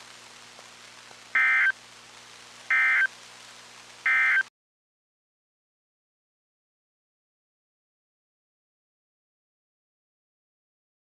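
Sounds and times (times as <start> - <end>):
low hum and hiss: 0.0 - 4.5
data chirp bursts: 1.4 - 1.8, 2.7 - 3.1, 4.1 - 4.5.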